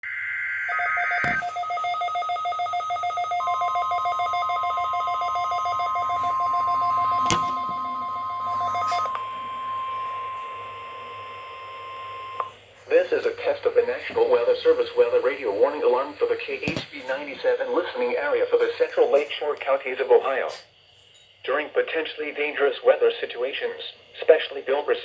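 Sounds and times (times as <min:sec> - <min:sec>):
two-pitch alarm beeping: 0:00.0 - 0:19.2
warbling digital data burst: 0:00.0 - 0:19.2
steady warning alarm tone: 0:00.0 - 0:20.6.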